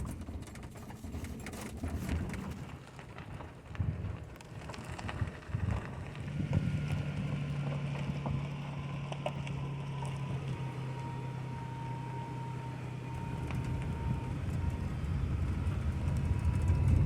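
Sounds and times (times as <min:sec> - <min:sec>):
clicks and rustles: 0:00.0 - 0:11.1
van engine running hum: 0:00.0 - 0:17.0.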